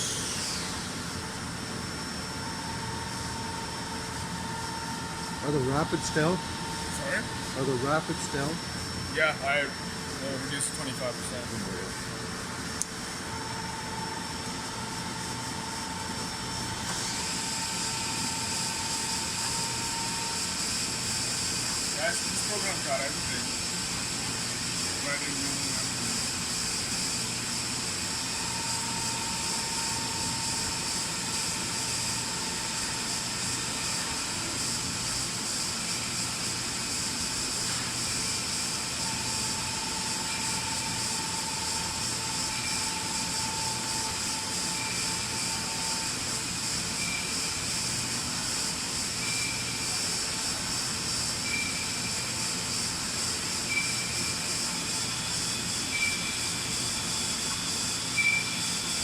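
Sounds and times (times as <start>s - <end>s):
machine hiss and hum: 0.0s - 59.0s
thin machine whine: 0.0s - 59.0s
faint chirps: 51.4s - 52.1s.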